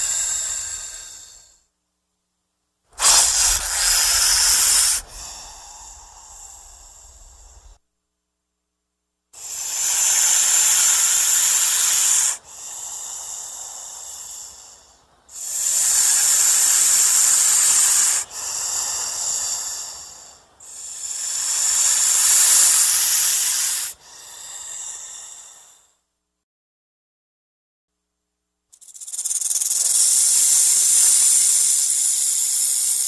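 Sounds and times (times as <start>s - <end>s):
snake hissing: 0.0s - 1.6s, 3.0s - 7.8s, 9.4s - 25.9s, 28.8s - 33.0s.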